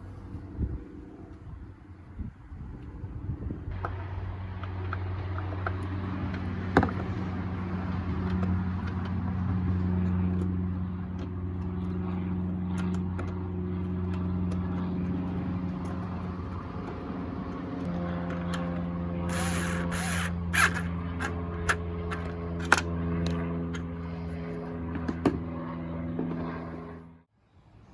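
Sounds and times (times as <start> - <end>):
low motor drone: 0.0 - 27.3
hand tool clicks and clinks: 19.3 - 23.8.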